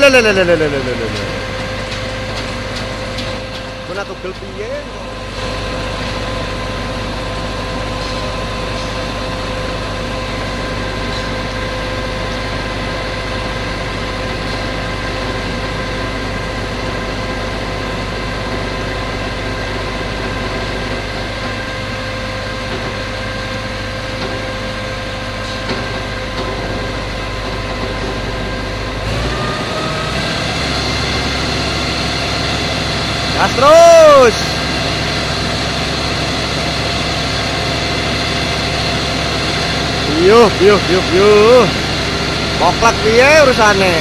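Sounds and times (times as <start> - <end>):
concrete pump engine revving: 0.0 - 44.0.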